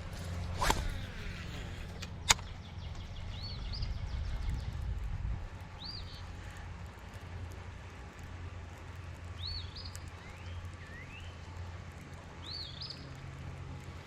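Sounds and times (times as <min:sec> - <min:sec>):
fishing rod swish: 0:00.0 - 0:01.8
line whirring off reel: 0:00.0 - 0:02.5
low steady rumble: 0:00.0 - 0:14.0
bird chirping: 0:02.3 - 0:04.8, 0:09.4 - 0:11.4.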